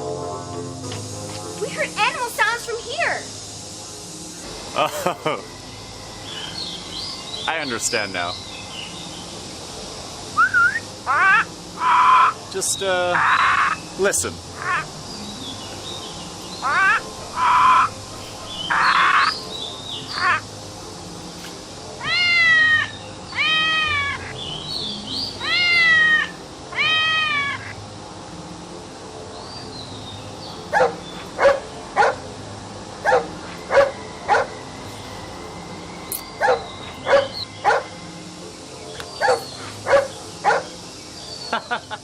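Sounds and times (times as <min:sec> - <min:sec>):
recorded animal calls: 0:10.4 - 0:20.5, 0:21.4 - 0:27.9, 0:30.4 - 0:32.2, 0:32.9 - 0:35.4, 0:36.1 - 0:38.0, 0:38.9 - 0:41.9.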